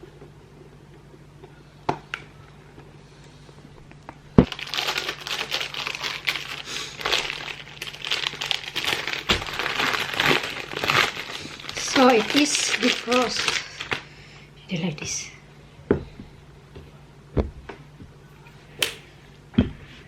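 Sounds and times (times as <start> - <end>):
packaging crinkling: 4.4 - 14.0.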